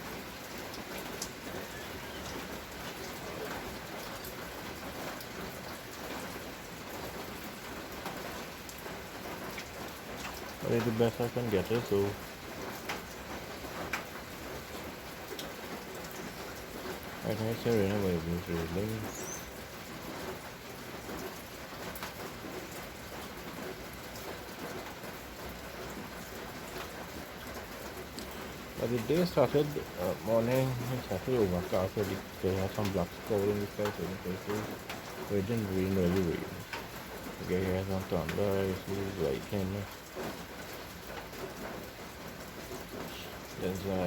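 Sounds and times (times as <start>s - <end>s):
rain pattering: 0.0s - 44.0s
drops ticking: 26.7s - 41.8s.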